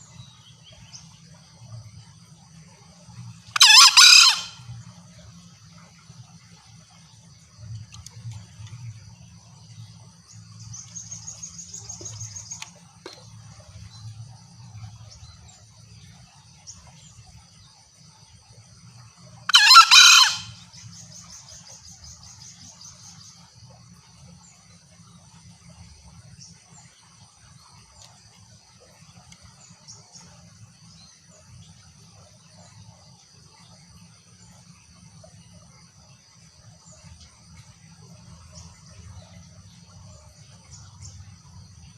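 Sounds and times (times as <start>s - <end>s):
high insect drone: 0.0s - 41.9s
junglefowl hoarse call: 3.6s - 4.7s, 19.5s - 20.6s.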